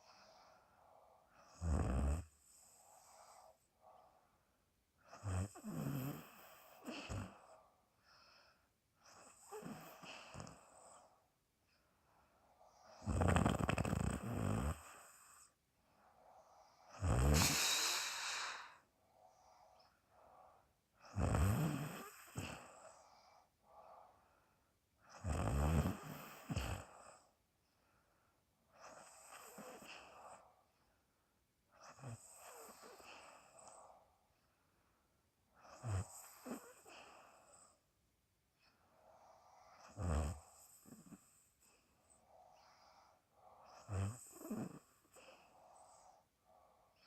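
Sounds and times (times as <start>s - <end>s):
woman snoring: 1.4s - 3.5s, 5.1s - 7.6s, 9.0s - 11.1s, 12.7s - 15.5s, 16.5s - 18.9s, 21.0s - 23.4s, 25.1s - 27.3s, 28.7s - 30.4s, 31.8s - 33.9s, 35.6s - 37.8s, 39.2s - 41.5s, 42.6s - 46.2s
puff of air blown out: 17.3s - 18.8s.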